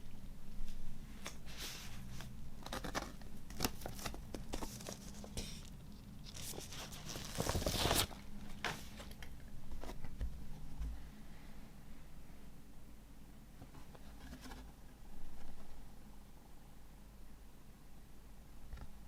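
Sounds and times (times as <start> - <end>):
packaging rustling and crinkling: 2.1 - 10.2.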